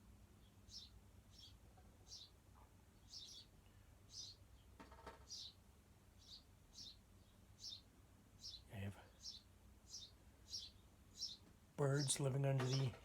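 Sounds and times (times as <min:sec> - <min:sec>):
birds chirping: 0:03.0 - 0:05.6, 0:06.2 - 0:13.0.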